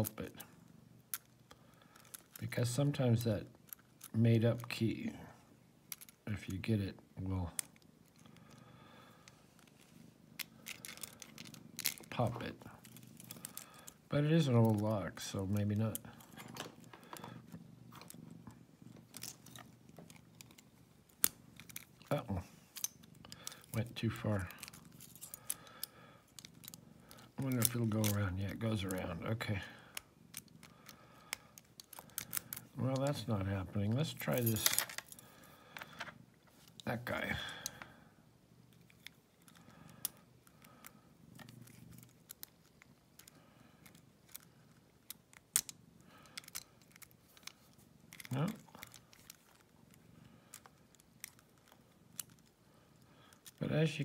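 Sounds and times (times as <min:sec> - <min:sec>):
lock pick clicking and scraping: 0:18.9 - 0:22.0, 0:22.7 - 0:23.8, 0:24.4 - 0:28.2, 0:29.9 - 0:33.1, 0:41.3 - 0:52.6
lock pick clicks and scrapes: 0:41.4 - 0:52.5.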